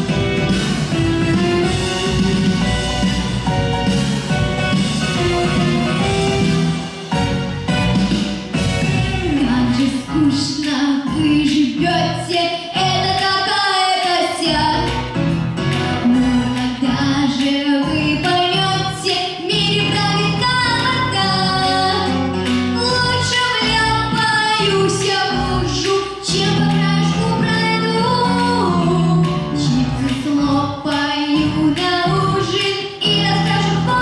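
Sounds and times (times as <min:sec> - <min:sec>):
song with beat bass and guitar: 0:00.0 - 0:09.4
woman singing: 0:09.1 - 0:15.0, 0:15.9 - 0:34.0.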